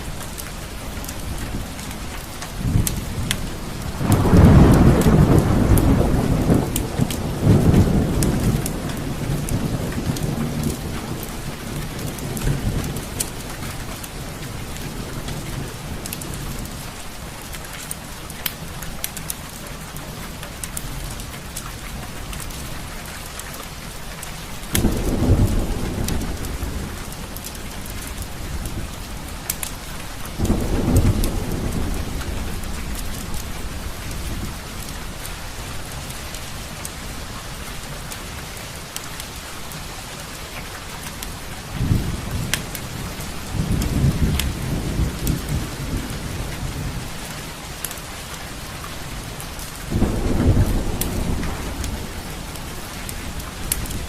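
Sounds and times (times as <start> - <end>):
low rolls of thunder: 0.0 - 16.8, 24.7 - 37.2, 41.6 - 47.8, 48.6 - 54.0
steady rain: 0.0 - 54.0.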